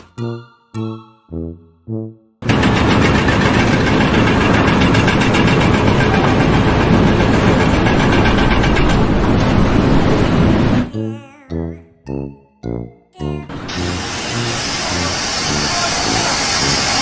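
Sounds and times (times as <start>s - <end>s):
loud steady machinery noise: 2.4s - 10.9s, 13.5s - 17.0s.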